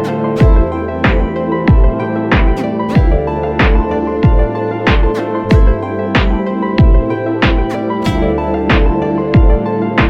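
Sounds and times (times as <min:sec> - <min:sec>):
held synth chords: 0:00.0 - 0:10.0
deep kick drum: 0:00.4 - 0:09.7.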